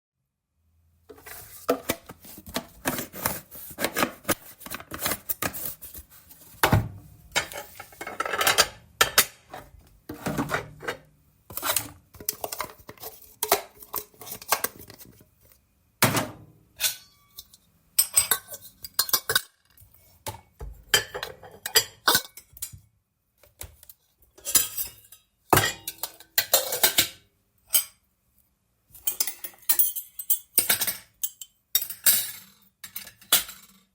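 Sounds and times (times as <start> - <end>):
dishes and cutlery clinking: 7.4 - 15.0, 16.8 - 22.8, 24.4 - 28.0, 29.0 - 33.9.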